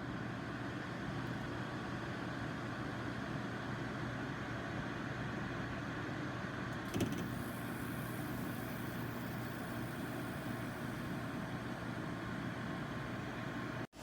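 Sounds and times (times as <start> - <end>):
air conditioner humming: 6.6 - 14.0.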